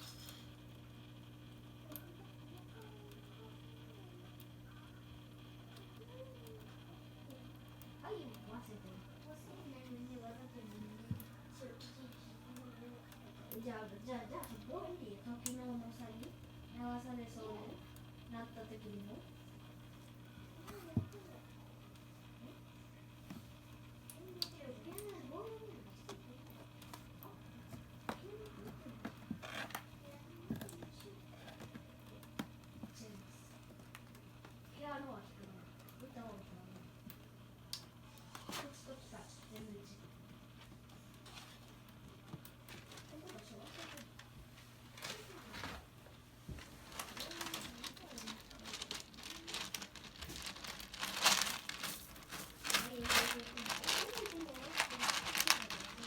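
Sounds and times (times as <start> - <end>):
kitty litter scratching: 42.7 - 56.0
scratchy rustle: 46.6 - 56.0.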